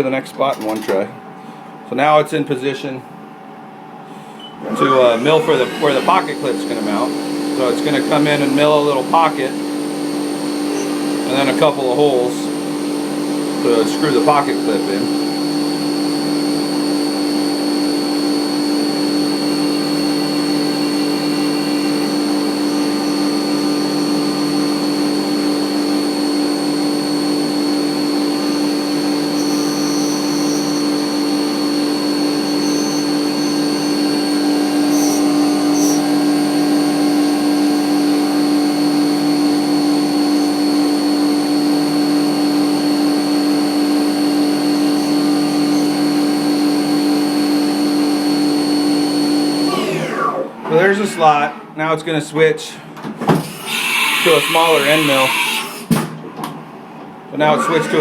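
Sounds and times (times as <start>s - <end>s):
high-pitched cutting tones: 4.6s - 7.1s
end mill cutting metal: 4.6s - 15.1s, 53.5s - 55.8s
milling machine spindle running: 4.6s - 16.4s, 18.2s - 26.2s, 53.4s - 55.8s.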